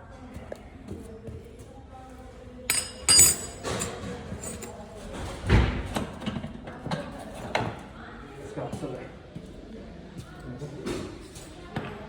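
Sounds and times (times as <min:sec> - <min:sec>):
metal clinks with ringing tail: 0:02.7 - 0:04.7.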